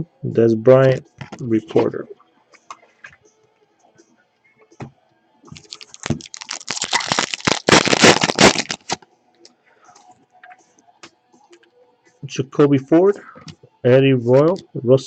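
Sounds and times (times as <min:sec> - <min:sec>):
cards clicking: 0:05.6 - 0:09.0
foil wrapper tearing and crinkling: 0:05.6 - 0:09.0.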